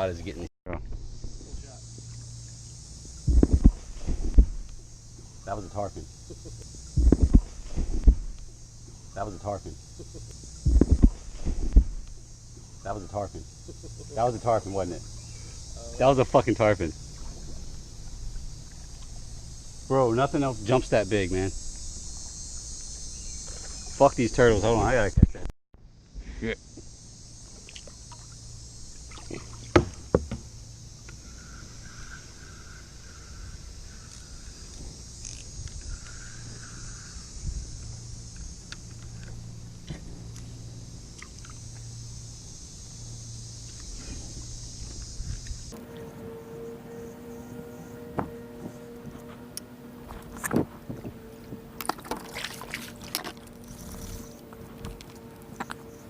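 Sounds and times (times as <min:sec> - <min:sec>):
faint steady hum: 0:00.0 - 0:56.0
kayak paddling: 0:00.7 - 0:24.7, 0:43.6 - 0:56.0
water sounds: 0:00.7 - 0:25.1, 0:27.3 - 0:39.5, 0:41.0 - 0:42.4, 0:43.0 - 0:56.0
paddle knocking against hull: 0:29.6 - 0:30.5, 0:48.1 - 0:49.2, 0:50.1 - 0:53.4.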